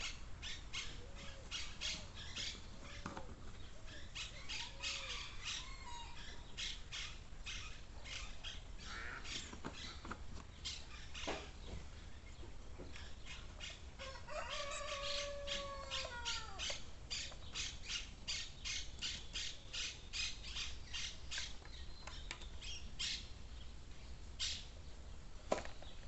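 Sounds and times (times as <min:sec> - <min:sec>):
bird calling with harsh notes: 0:03.9 - 0:11.6.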